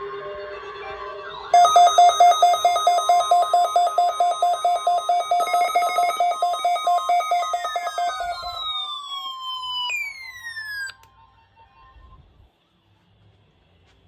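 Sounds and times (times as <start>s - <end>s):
falling gliding tones: 1.6s - 10.9s
rapid alarm beeps: 1.6s - 10.9s
steady high alarm tone: 1.6s - 11.0s
click: 10.8s - 11.2s.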